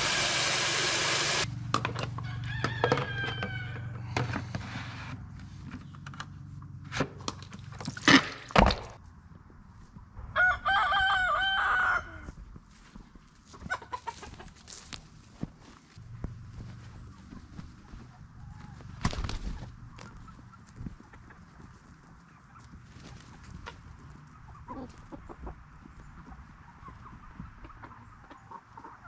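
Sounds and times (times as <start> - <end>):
rooster crowing: 2.2 - 4.2, 10.3 - 12.4
chicken calls: 10.4 - 12.4, 13.4 - 14.9, 16.6 - 29.0.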